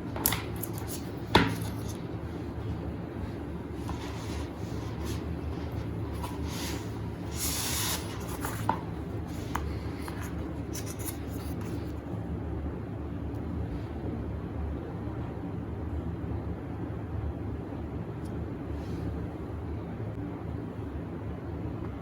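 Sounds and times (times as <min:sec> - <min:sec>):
brushing and rubbing handling: 0:00.0 - 0:12.0
steady low hum: 0:00.0 - 0:22.0.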